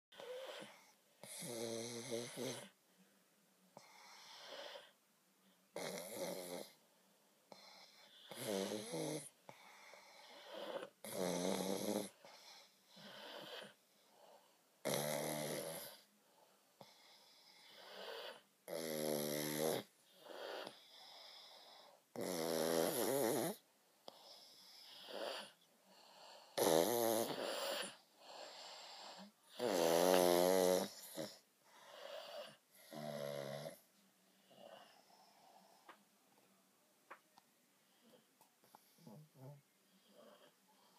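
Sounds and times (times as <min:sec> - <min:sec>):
dogs snoring: 0:00.1 - 0:02.8, 0:03.8 - 0:05.0, 0:05.7 - 0:06.8, 0:07.5 - 0:16.1, 0:16.8 - 0:36.0, 0:38.0 - 0:40.9.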